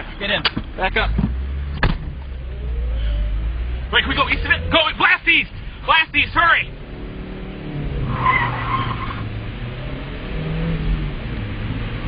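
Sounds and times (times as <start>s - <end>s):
car engine revving hard: 0.9s - 12.0s
tyre squeal: 8.0s - 9.3s.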